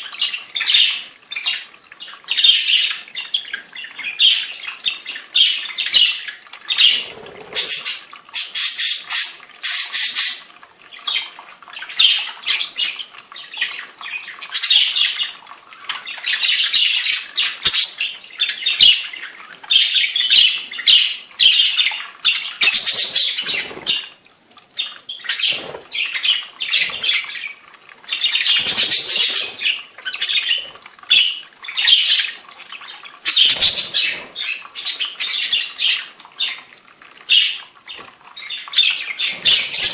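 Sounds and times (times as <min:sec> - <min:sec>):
budgerigars chattering and squawking: 0:00.0 - 0:24.2, 0:24.8 - 0:36.7, 0:37.3 - 0:39.9.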